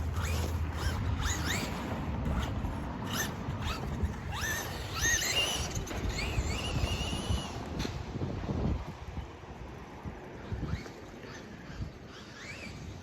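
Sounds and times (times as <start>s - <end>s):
electric motor whining: 0.0s - 7.6s.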